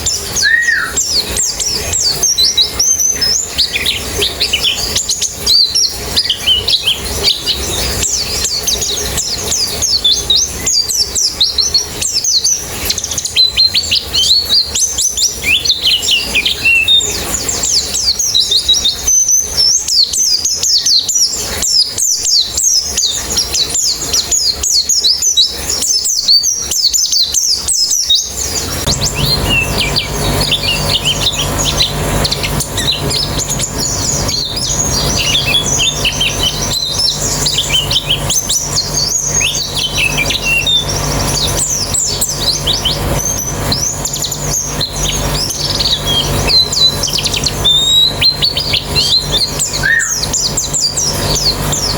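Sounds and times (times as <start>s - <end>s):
birds chirping and twittering: 0.0s - 51.9s
steady low hum: 26.5s - 51.9s.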